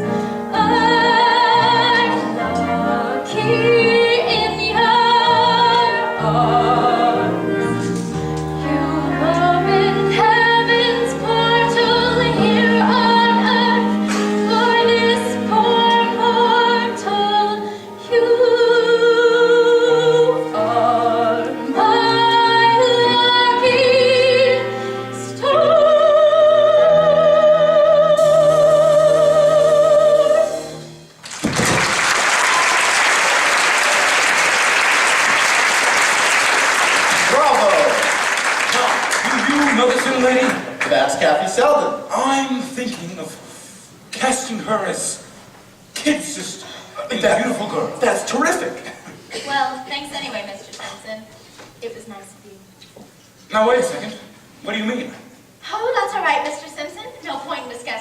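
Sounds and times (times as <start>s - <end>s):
audience applause: 31.2s - 41.0s.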